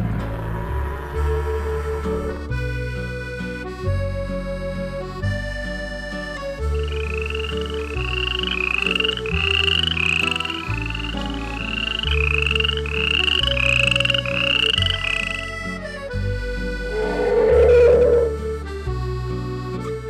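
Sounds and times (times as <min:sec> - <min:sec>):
background music with bass line: 0:00.0 - 0:20.0
animal rising chirp call: 0:06.8 - 0:15.7, 0:16.9 - 0:18.5.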